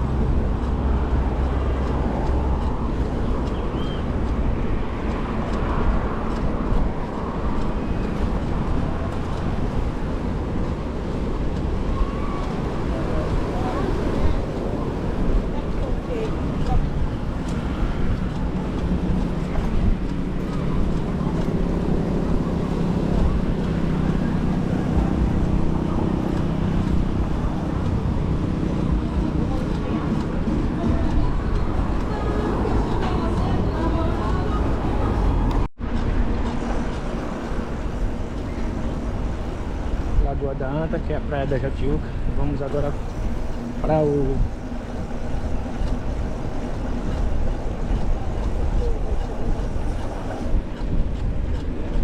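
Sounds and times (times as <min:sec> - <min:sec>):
road and traffic noise: 0:00.0 - 0:52.0
wind rushing over microphone: 0:00.0 - 0:52.0.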